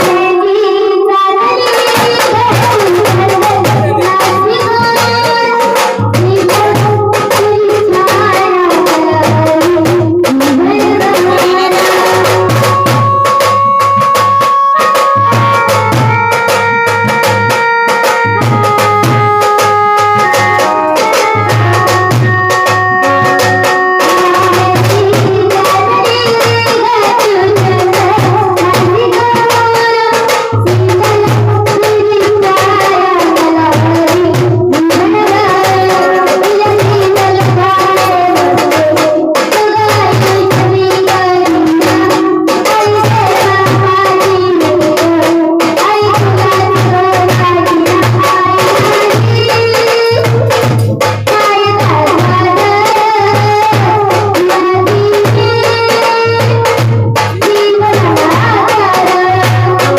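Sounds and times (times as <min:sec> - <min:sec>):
hand drum percussion: 0:00.0 - 0:59.9
melodic lead: 0:15.0 - 0:26.2.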